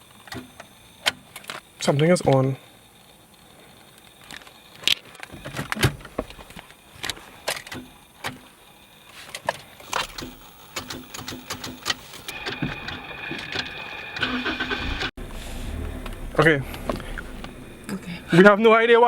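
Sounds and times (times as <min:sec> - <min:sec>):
sharp clicks and knocks in car: 0:04.8 - 0:08.5, 0:09.3 - 0:13.7, 0:15.2 - 0:18.1.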